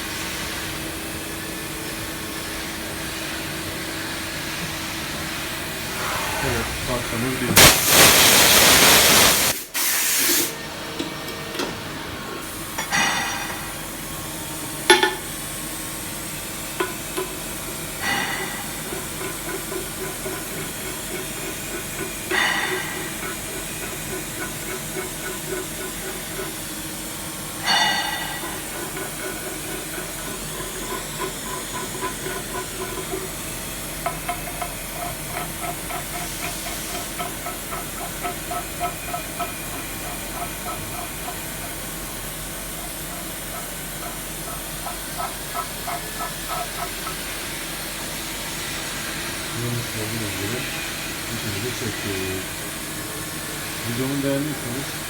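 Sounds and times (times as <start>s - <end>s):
loud hiss: 5.8s - 10.6s
milling spindle and cutter running: 15.4s - 55.0s.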